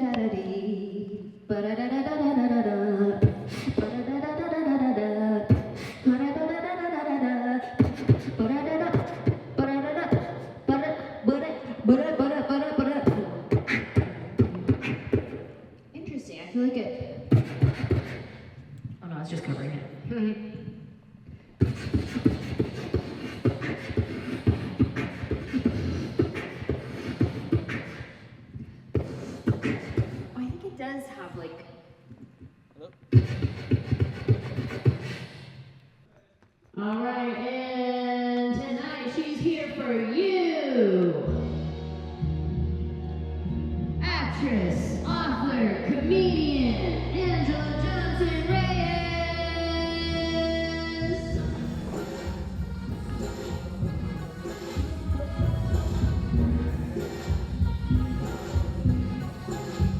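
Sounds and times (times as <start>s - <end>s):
woman singing wordless melody: 0.0s - 13.4s, 44.0s - 51.4s
beatbox mouth clicks: 3.2s - 4.0s, 5.5s - 6.1s, 7.8s - 9.4s, 13.1s - 15.9s, 17.2s - 19.6s, 21.3s - 30.7s, 32.1s - 36.6s.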